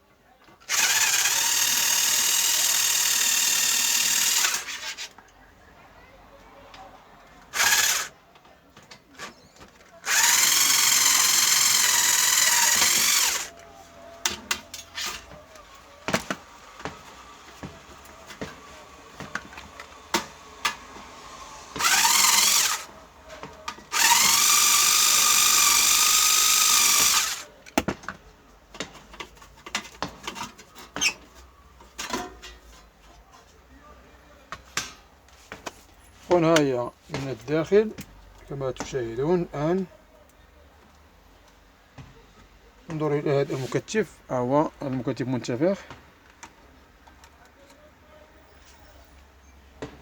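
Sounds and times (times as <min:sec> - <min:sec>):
screws clicking and tapping: 0:00.7 - 0:04.8, 0:07.6 - 0:08.1, 0:10.1 - 0:13.6, 0:21.8 - 0:22.9, 0:23.7 - 0:27.5
electric screwdriver whining: 0:00.7 - 0:05.0, 0:07.5 - 0:08.1, 0:10.0 - 0:13.6, 0:19.2 - 0:23.0, 0:23.9 - 0:27.5.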